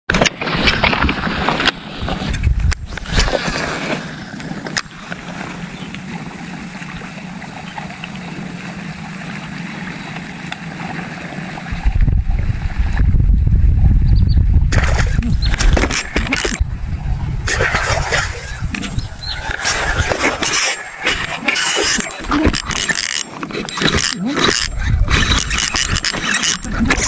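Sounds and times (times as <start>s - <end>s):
wind buffeting microphone: 0.5s - 7.1s, 11.6s - 23.1s, 23.7s - 27.0s.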